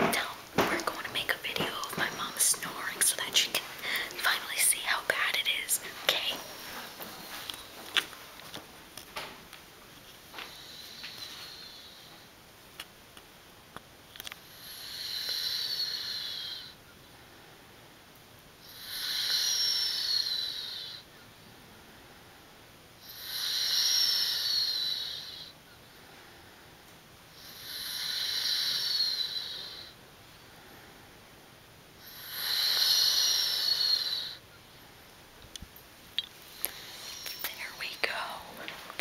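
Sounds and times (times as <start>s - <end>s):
woman snoring: 14.4s - 16.8s, 18.7s - 21.0s, 23.0s - 25.5s, 27.4s - 30.0s, 32.0s - 34.4s.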